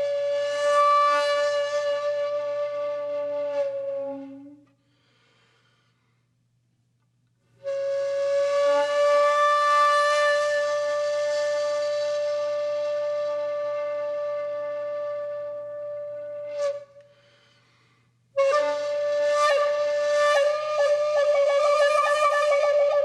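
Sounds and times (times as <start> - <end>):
wind instrument long note: 18.4 - 23.0.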